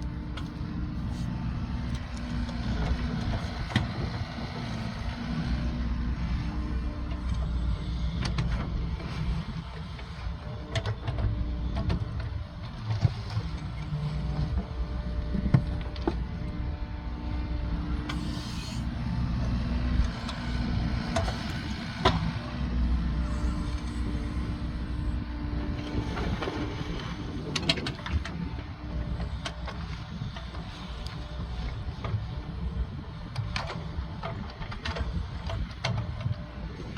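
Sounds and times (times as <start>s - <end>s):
diesel engine drone: 0.0s - 36.9s.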